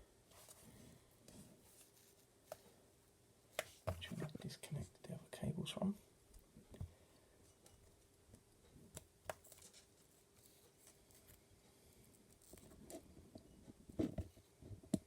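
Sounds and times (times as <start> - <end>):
handling noises and clicks: 7.6 - 11.4.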